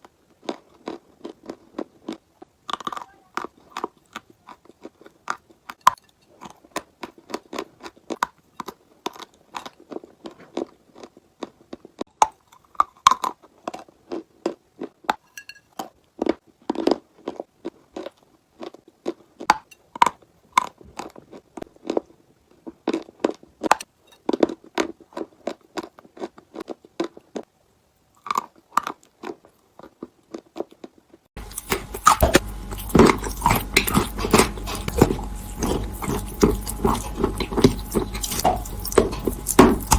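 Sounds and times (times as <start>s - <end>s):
chalk being crunched and chewed: 0.0s - 15.2s, 28.1s - 39.9s.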